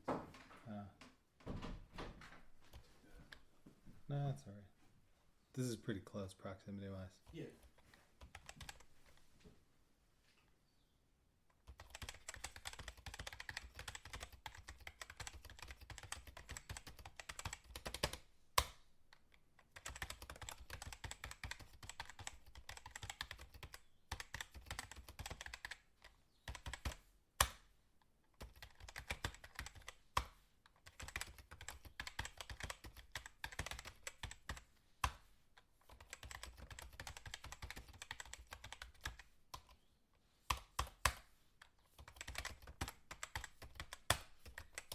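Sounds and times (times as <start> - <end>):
fast typing on keyboard: 7.6 - 8.9, 11.6 - 18.2, 19.6 - 27.0, 28.4 - 35.2, 35.8 - 39.8, 40.5 - 41.2, 41.8 - 44.9.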